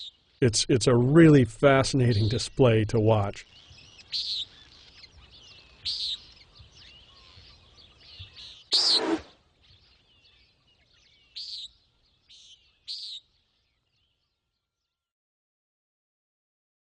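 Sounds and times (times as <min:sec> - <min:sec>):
faint chirping birds: 0:00.0 - 0:15.1
nighthawk nasal peent call: 0:08.7 - 0:09.4.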